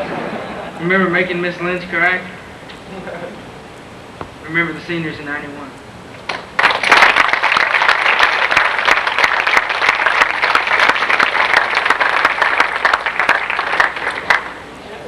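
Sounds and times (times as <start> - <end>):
audience applauding: 6.3 - 14.6.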